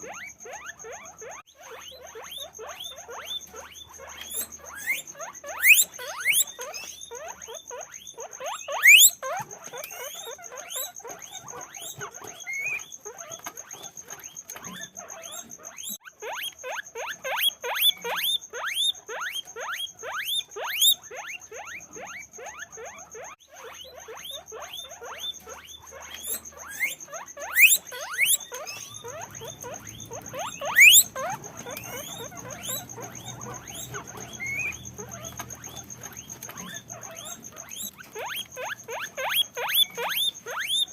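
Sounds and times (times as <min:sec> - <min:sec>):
guinea pigs squeaking: 0:00.0 - 0:40.9.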